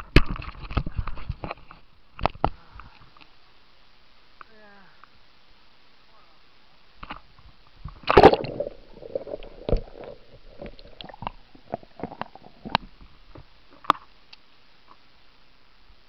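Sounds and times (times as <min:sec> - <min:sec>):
water sounds: 0:07.8 - 0:14.0
loud splash: 0:08.1 - 0:11.0.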